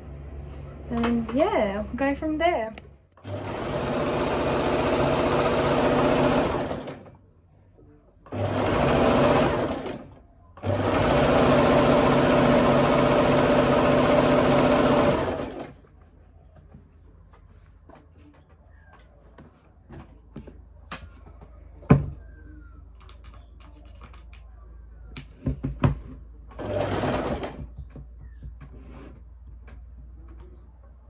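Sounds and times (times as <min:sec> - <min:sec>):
sewing machine running fast: 0:03.2 - 0:07.1, 0:08.3 - 0:15.8, 0:26.6 - 0:27.6.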